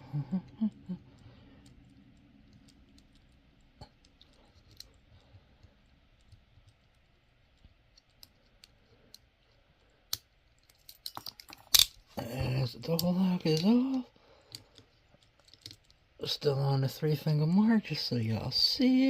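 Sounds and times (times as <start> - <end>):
lock picks clicking on metal: 10.1 - 12.0.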